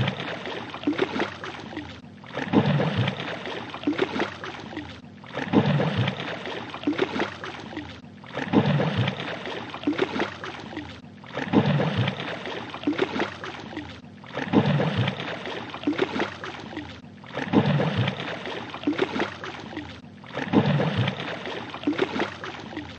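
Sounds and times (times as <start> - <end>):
fish splashing in water: 0.0 - 22.9.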